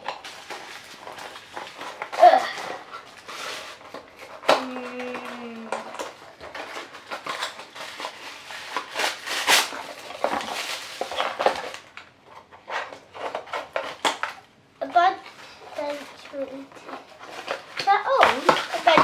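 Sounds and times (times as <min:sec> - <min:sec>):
plastic wrapping crinkling: 0:00.0 - 0:19.0
plastic toy pieces clicking: 0:04.2 - 0:08.1.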